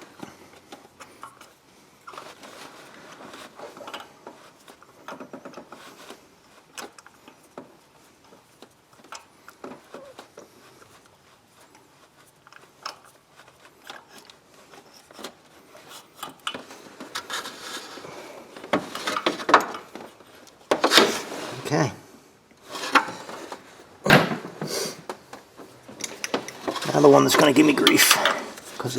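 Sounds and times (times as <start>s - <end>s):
rubbing and scraping: 9.6s - 21.9s, 22.6s - 28.9s
metallic clicks and clinks of tools: 26.0s - 28.8s.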